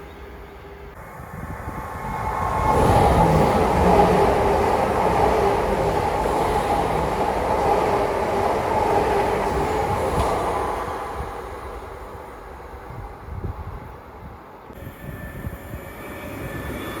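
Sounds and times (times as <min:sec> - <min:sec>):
train wheels rumbling on track: 0:00.0 - 0:17.0.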